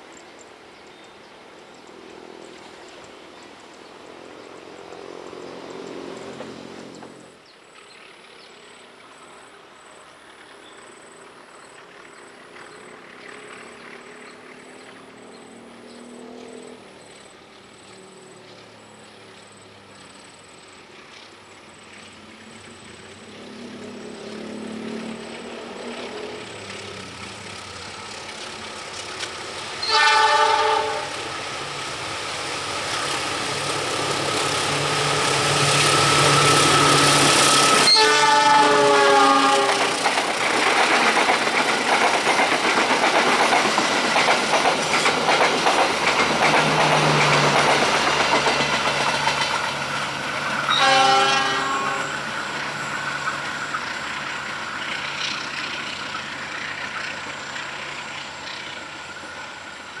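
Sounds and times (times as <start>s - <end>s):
train rumble: 0.0s - 60.0s
train wheels clattering on rails: 0.8s - 60.0s
train horn: 29.8s - 31.3s, 35.4s - 40.1s, 50.5s - 52.5s.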